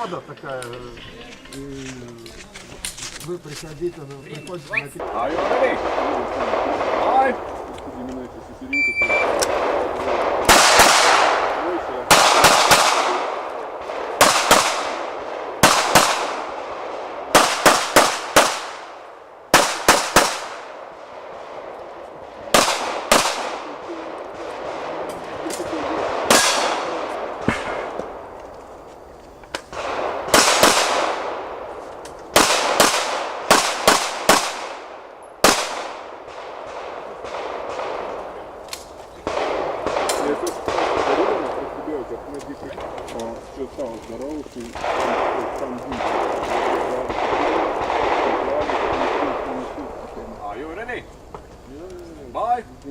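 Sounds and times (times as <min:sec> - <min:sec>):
pistol shots echoing: 0:05.0 - 0:08.0, 0:08.8 - 0:28.4, 0:29.6 - 0:43.1, 0:44.7 - 0:50.1.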